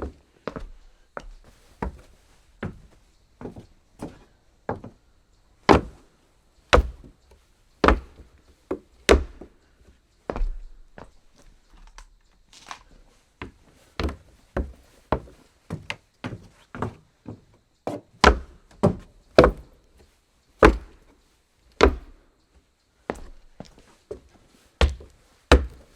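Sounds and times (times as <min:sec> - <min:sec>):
footsteps on wooden floor: 0:00.0 - 0:05.0, 0:06.7 - 0:07.2, 0:07.8 - 0:09.6, 0:10.3 - 0:11.6, 0:12.6 - 0:19.8, 0:20.6 - 0:21.1, 0:21.8 - 0:22.2, 0:23.1 - 0:25.9.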